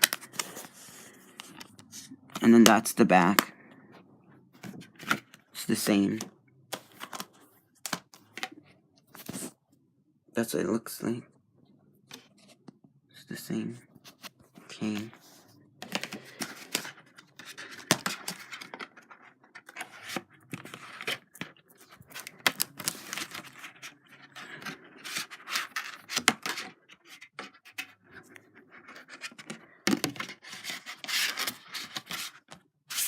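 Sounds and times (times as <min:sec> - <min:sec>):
plastic cases scraping and clicking: 0:04.6 - 0:09.5, 0:14.0 - 0:33.0.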